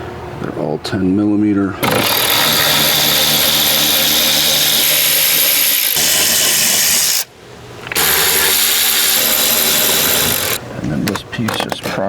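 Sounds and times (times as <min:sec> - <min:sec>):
power driver whirring: 0:01.8 - 0:10.6.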